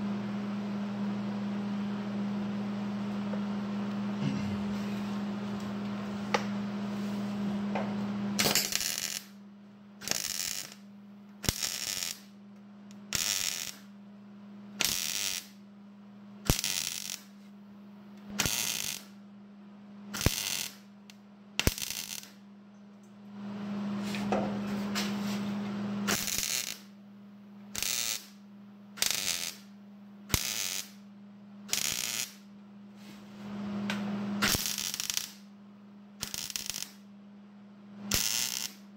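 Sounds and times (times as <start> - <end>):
steady hum: 0.0 - 38.9
arc welder crackling: 8.4 - 9.4, 10.0 - 14.0, 14.7 - 15.6, 16.4 - 17.5, 18.2 - 19.2, 20.1 - 22.4, 24.0 - 27.0, 27.6 - 32.5, 33.6 - 35.5, 36.2 - 37.1, 38.0 - 38.9.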